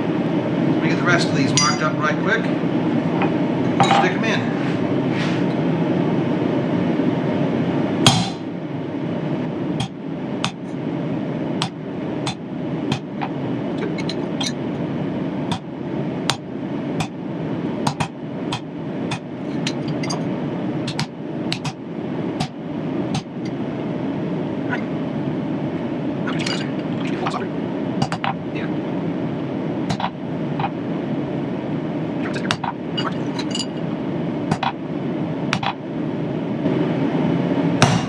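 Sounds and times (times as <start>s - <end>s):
hammer tapping a chisel on steel: 11.6s - 13.3s, 17.9s - 20.2s, 20.9s - 21.8s, 29.9s - 30.7s.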